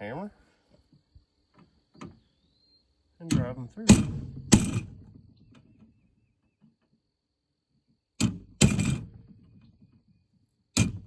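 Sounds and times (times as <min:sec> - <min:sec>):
hammer striking steel punch: 0:03.3 - 0:05.0.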